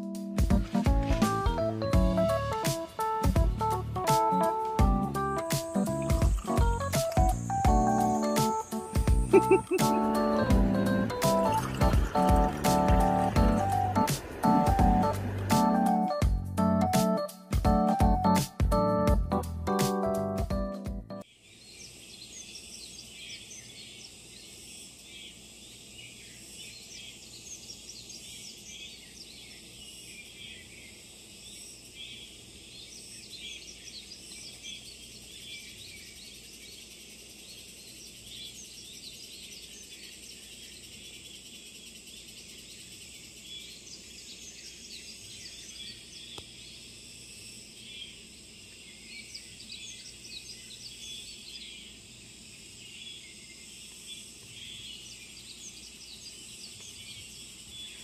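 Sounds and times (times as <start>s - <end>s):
birds chirping: 0.0s - 17.0s, 21.2s - 58.0s
insects calling: 1.9s - 16.2s, 21.2s - 58.0s.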